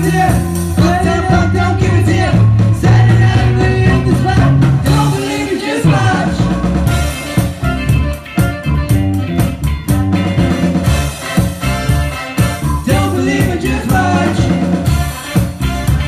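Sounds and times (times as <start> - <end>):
person singing: 0.0 - 6.8, 12.6 - 16.0
funk band music: 0.0 - 16.0.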